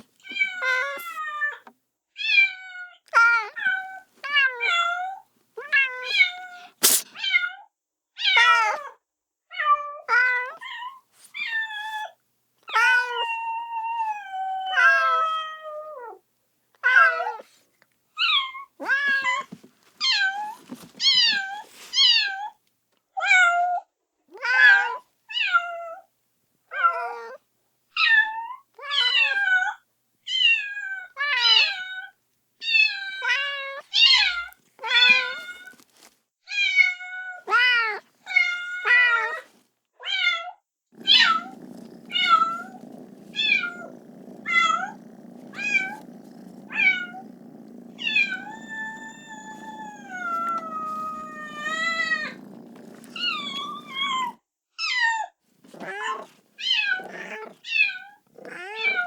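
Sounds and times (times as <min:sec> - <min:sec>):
kitten meowing: 0:05.7 - 0:07.3, 0:41.0 - 0:54.4, 0:55.7 - 0:59.0.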